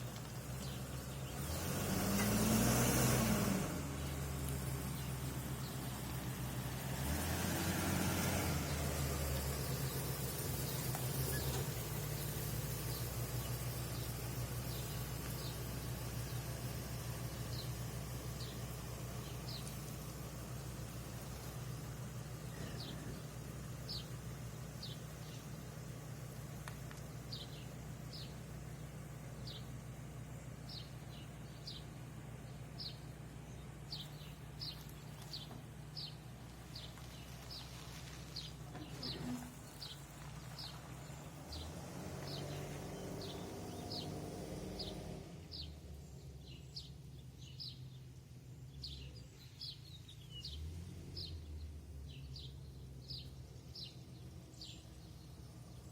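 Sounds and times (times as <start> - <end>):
bird chirping: 0.0 - 1.8, 8.6 - 16.6, 17.2 - 19.9, 20.5 - 55.9.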